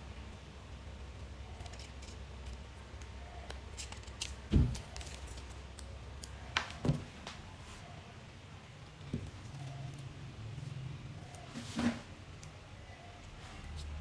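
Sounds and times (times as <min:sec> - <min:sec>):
low steady hum: 0:00.0 - 0:14.0
dull thump: 0:04.5 - 0:04.8.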